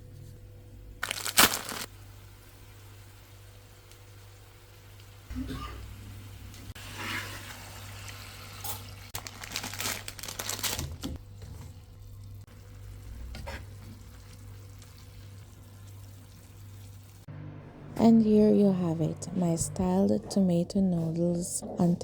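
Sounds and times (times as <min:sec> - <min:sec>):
low steady hum: 0:11.9 - 0:22.0.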